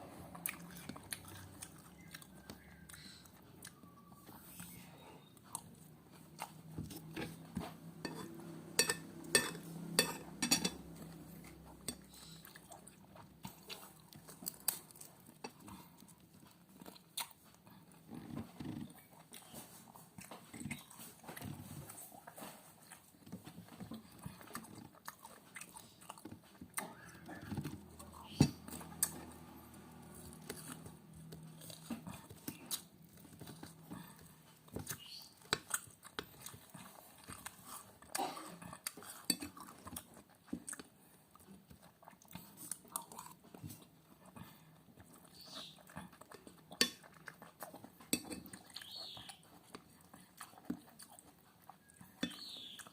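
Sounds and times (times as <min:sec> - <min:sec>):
person chewing and crunching: 0:00.2 - 0:52.9.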